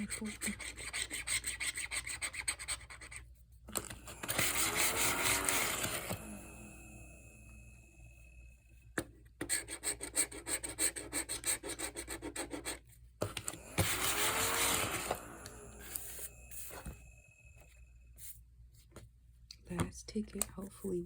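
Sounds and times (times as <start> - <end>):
scratching lottery ticket: 0.0 - 6.1, 9.4 - 12.9.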